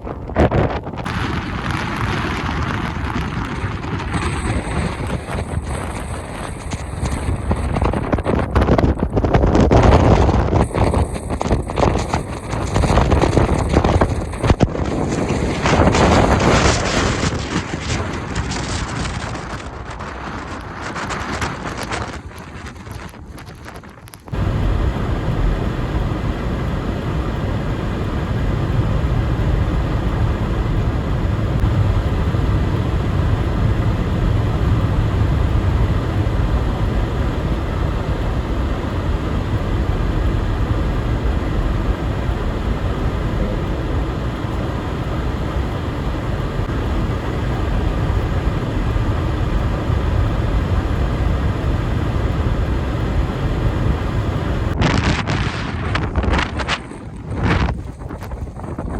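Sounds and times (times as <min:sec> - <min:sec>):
wind buffeting microphone: 0:00.0 - 0:58.9.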